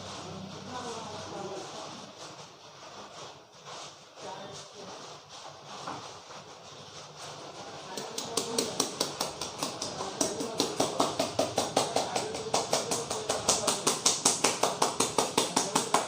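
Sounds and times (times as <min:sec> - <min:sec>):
hands slapping head rhythmically: 0:08.0 - 0:16.0.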